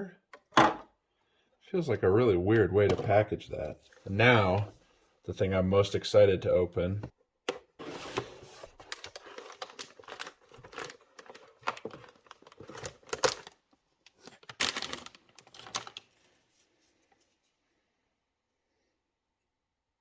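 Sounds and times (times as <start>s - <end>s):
cardboard and plastic rustling: 7.8s - 17.4s.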